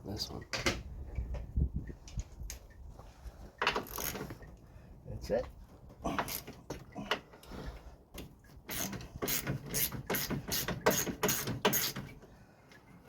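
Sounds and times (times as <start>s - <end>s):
ratchet wrench clicking: 8.7s - 12.0s.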